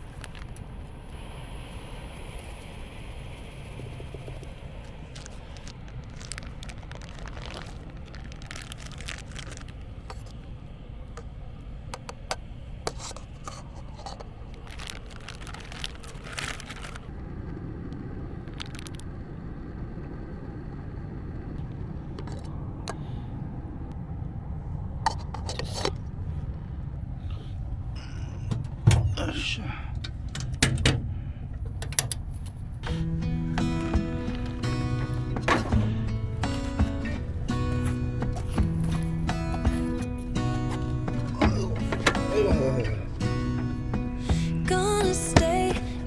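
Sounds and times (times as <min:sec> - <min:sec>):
rustling and crinkling handling: 0:00.0 - 0:00.7, 0:04.9 - 0:10.6, 0:12.9 - 0:17.1, 0:31.7 - 0:46.0
steady low rumble: 0:00.0 - 0:46.0.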